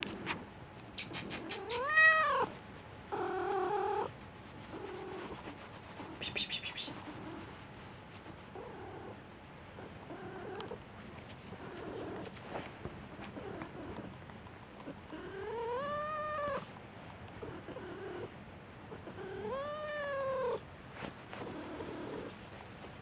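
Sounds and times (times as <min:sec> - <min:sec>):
cat chirping: 0:00.9 - 0:02.5, 0:06.2 - 0:07.3
cat meowing: 0:01.4 - 0:02.5, 0:15.5 - 0:16.7, 0:19.4 - 0:20.6.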